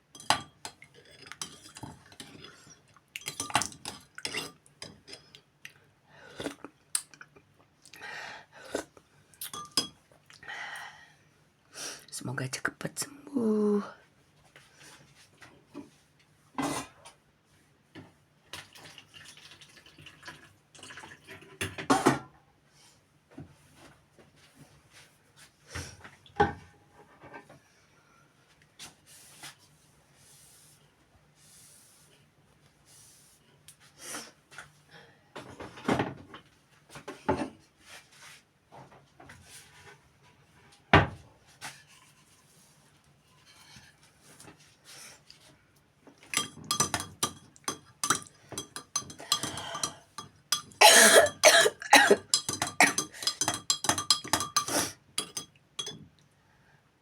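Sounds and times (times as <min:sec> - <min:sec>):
dishes clinking and clattering: 0:00.1 - 0:05.4, 0:09.5 - 0:10.0, 0:46.3 - 0:56.1
objects knocking and rubbing: 0:52.1 - 0:56.0.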